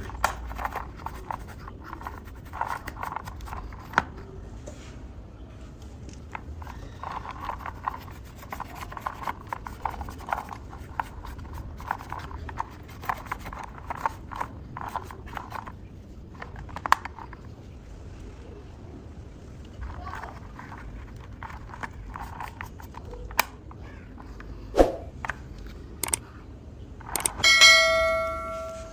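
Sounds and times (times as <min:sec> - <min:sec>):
hand scraping toy car: 0:00.0 - 0:04.4, 0:06.2 - 0:17.8, 0:19.6 - 0:26.3.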